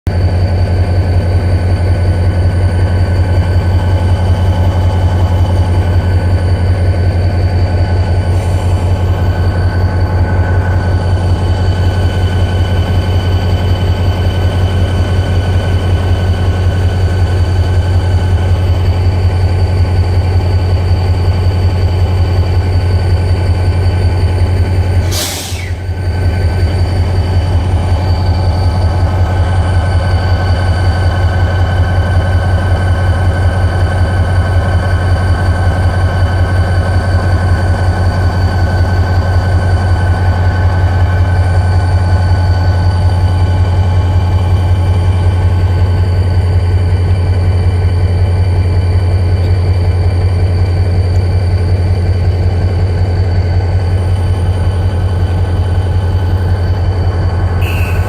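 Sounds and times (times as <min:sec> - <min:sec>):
locomotive engine humming: 0:00.1 - 0:58.0
short hiss: 0:25.0 - 0:25.9.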